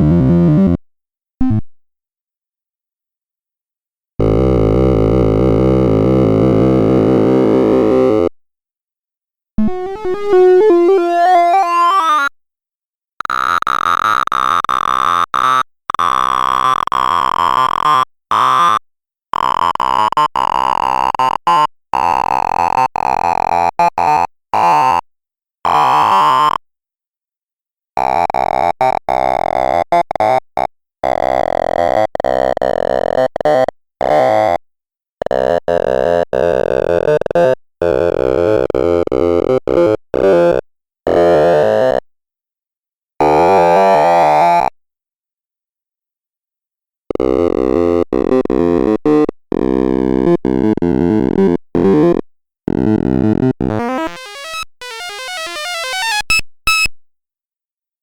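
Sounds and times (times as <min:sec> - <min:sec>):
rapid synthesized beeps: 0:53.9 - 0:56.9.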